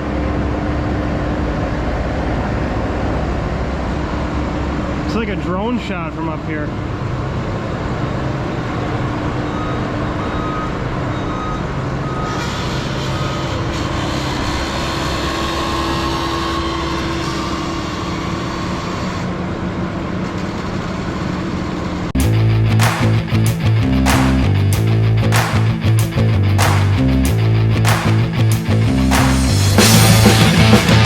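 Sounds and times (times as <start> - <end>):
diesel engine running: 22.2 - 31.0.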